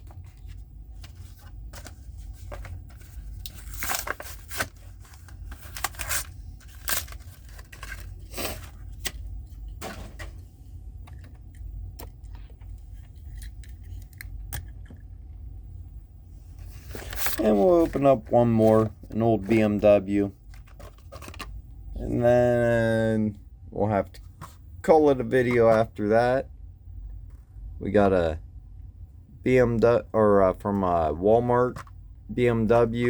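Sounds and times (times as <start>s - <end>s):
steady low hum: 0.0s - 33.0s
cardboard tearing: 3.6s - 9.1s.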